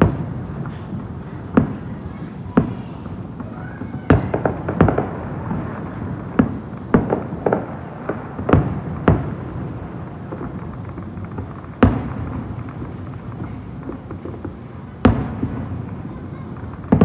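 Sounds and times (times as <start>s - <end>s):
fireworks bursting: 0.0s - 17.0s.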